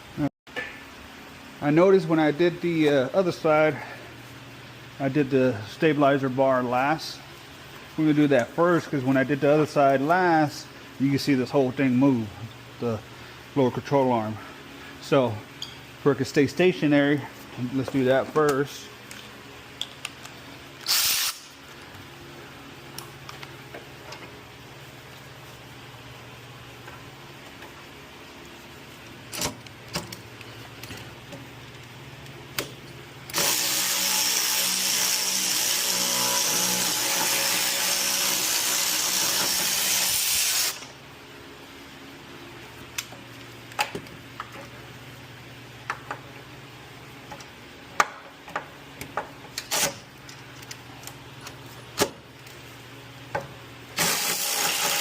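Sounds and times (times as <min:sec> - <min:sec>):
handheld power tool running: 0:20.8 - 0:21.5, 0:33.3 - 0:40.9, 0:54.0 - 0:55.0.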